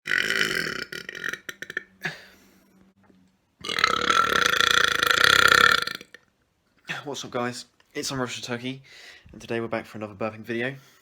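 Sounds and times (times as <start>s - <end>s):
person burping loudly: 0.0s - 2.4s, 3.6s - 6.2s.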